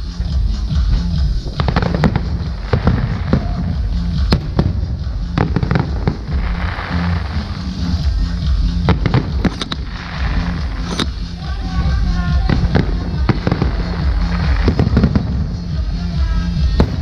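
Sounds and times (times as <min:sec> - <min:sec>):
fireworks bursting: 0:00.8 - 0:17.0
low rumble: 0:00.8 - 0:17.0.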